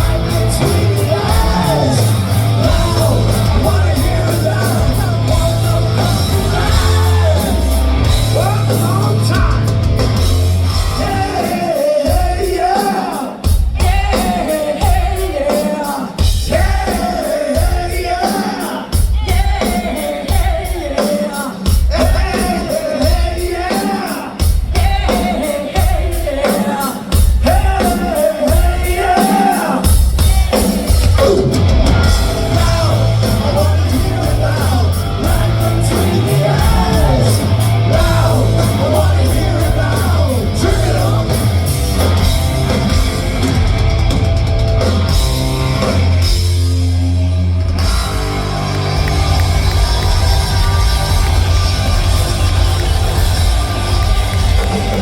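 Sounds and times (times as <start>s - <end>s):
person singing: 0.0s - 9.7s, 10.8s - 41.6s
live hard rock band: 0.0s - 55.0s.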